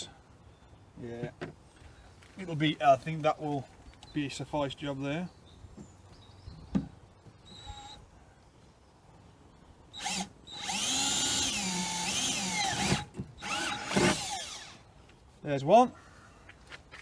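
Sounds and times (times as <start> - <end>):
electric drill boring: 10.0 - 14.8.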